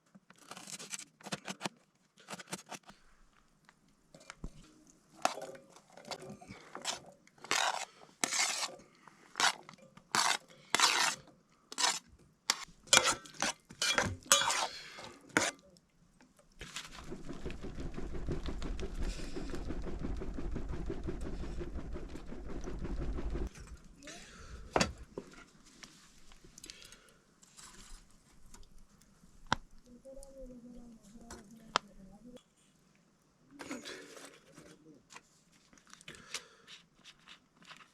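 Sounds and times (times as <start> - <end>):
pot and utensils clinking: 13.8 - 14.7.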